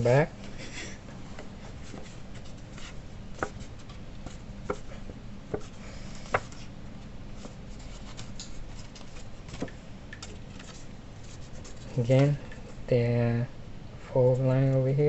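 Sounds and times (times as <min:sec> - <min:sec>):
paper rustling: 0:07.4 - 0:12.4.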